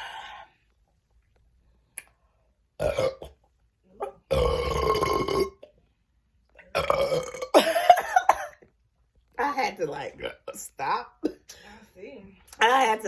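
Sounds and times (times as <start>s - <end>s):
woman burping: 2.8s - 3.4s, 4.0s - 5.7s, 6.6s - 8.6s.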